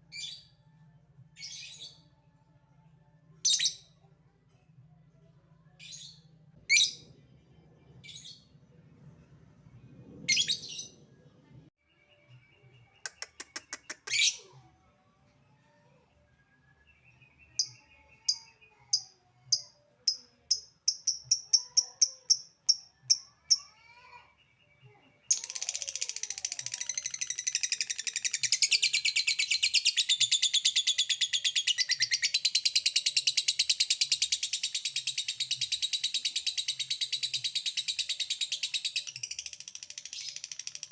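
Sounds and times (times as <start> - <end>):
lovebird chirping and trilling: 10.3 - 11.0, 25.3 - 40.9.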